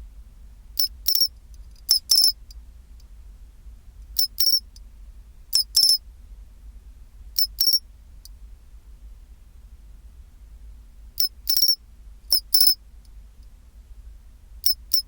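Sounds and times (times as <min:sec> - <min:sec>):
cricket singing trills: 0:00.8 - 0:02.4, 0:04.2 - 0:04.7, 0:05.5 - 0:06.0, 0:07.4 - 0:07.8, 0:11.2 - 0:12.8, 0:14.6 - 0:15.0.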